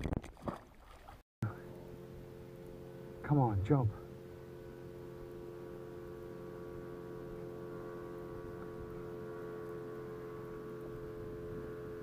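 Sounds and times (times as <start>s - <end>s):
steady hum with fixed tones: 1.4s - 12.0s.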